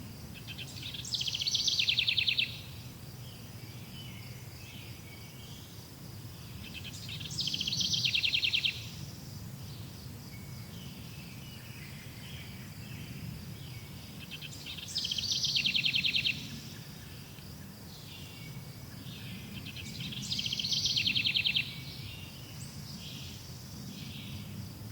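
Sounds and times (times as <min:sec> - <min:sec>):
bird singing fast trill: 0:00.6 - 0:02.6, 0:06.7 - 0:08.8.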